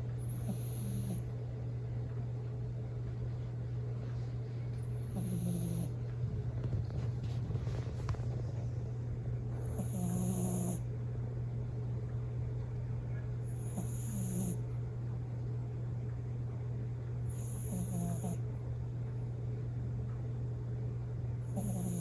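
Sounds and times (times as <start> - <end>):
steady low hum: 0.0 - 22.0
dog snoring with whistle: 0.2 - 1.3, 5.0 - 5.9, 9.6 - 10.8, 13.5 - 14.6, 17.3 - 18.4, 21.5 - 22.0.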